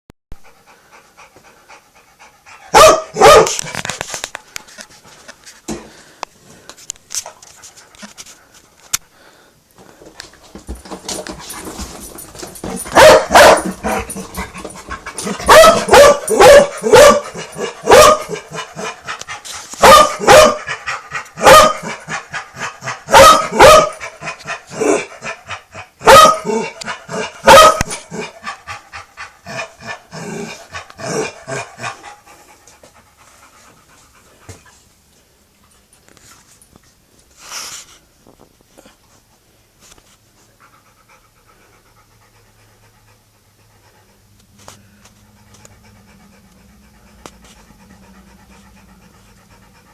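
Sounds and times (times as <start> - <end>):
dog barking: 2.7 - 3.6, 12.8 - 14.3, 15.2 - 18.9, 19.8 - 20.8, 21.4 - 22.0, 23.0 - 24.1, 26.0 - 28.3.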